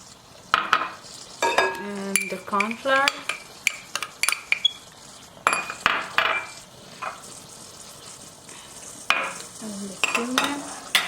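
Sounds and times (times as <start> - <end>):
spoon tapping a mixing bowl: 0.6 - 4.7, 10.0 - 11.0
spoon scraping a bowl: 0.7 - 4.8.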